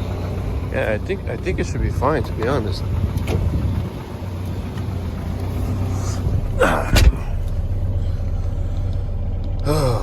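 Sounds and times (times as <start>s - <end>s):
car engine idling: 0.0s - 10.0s
thump: 6.9s - 7.2s.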